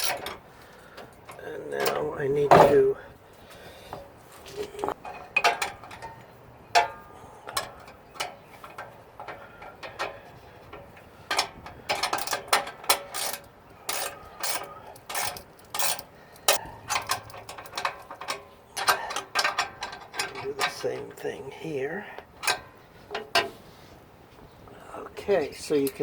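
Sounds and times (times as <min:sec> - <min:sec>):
ratchet wrench clicking: 0:00.0 - 0:00.3, 0:13.0 - 0:17.8
metal knocks: 0:01.8 - 0:02.9.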